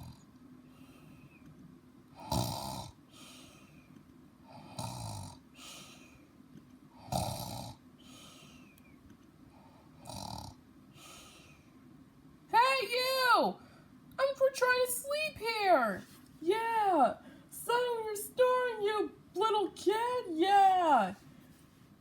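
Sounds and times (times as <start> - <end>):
soft breath out: 0.6 - 1.4, 3.1 - 4.8, 5.6 - 6.3, 8.0 - 8.9, 10.9 - 11.8
deep rasping snores: 2.2 - 3.0, 4.6 - 5.4, 7.0 - 7.8, 10.0 - 10.6.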